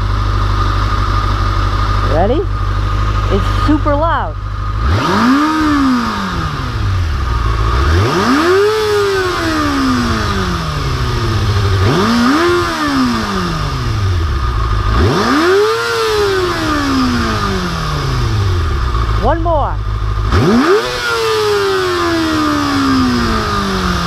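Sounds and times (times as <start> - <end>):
motorcycle engine revving: 0.0 - 24.0.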